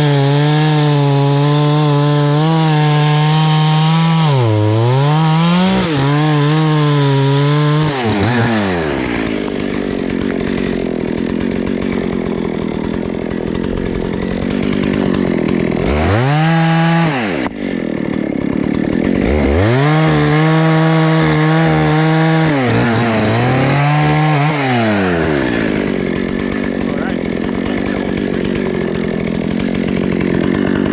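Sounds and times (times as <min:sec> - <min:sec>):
chainsaw cutting logs: 0:00.0 - 0:30.9.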